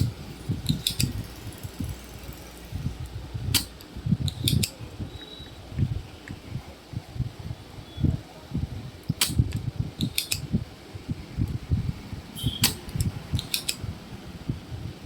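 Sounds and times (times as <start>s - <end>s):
desoldering pump clicks: 0.0s - 1.2s, 3.5s - 4.8s, 9.0s - 10.5s, 12.4s - 13.8s
low thumps and rumbling: 0.0s - 15.0s.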